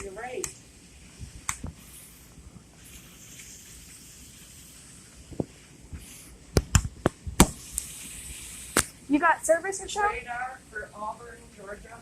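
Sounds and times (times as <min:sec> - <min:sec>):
sharp click: 0:06.6 - 0:07.9.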